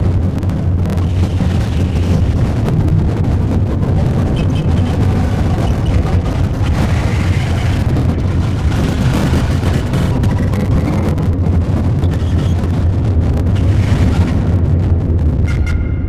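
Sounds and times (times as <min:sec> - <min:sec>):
dense rumbling noise drone: 0:00.0 - 0:16.0.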